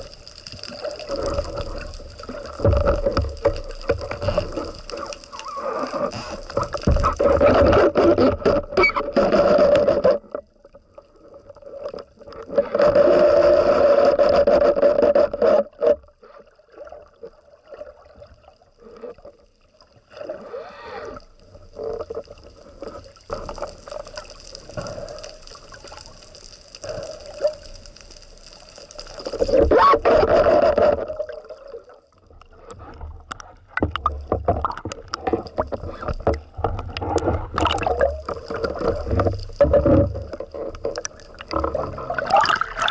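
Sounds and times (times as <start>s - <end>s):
water sloshing and bubbling: 0.0s - 42.9s.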